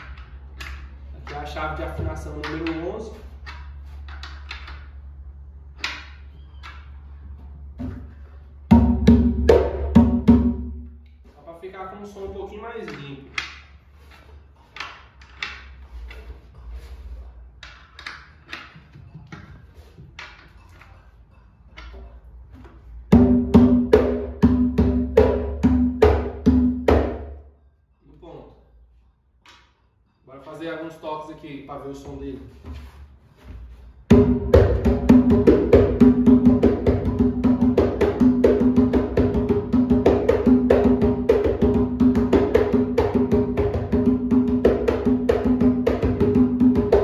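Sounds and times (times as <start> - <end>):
hand drum played rhythmically: 23.1 - 27.2, 34.1 - 47.0.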